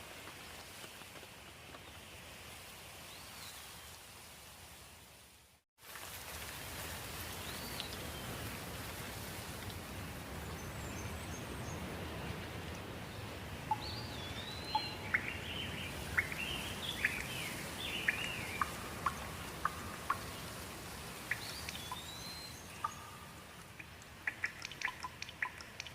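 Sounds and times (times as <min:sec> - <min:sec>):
steady rain falling: 0:00.0 - 0:25.9
birds chirping: 0:13.1 - 0:25.9.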